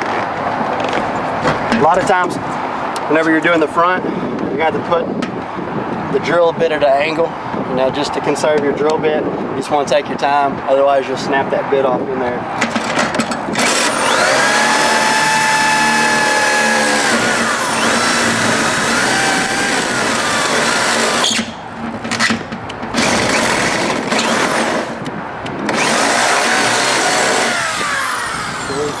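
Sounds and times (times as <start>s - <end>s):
power drill boring: 13.6s - 21.5s, 23.0s - 25.0s, 25.7s - 29.0s.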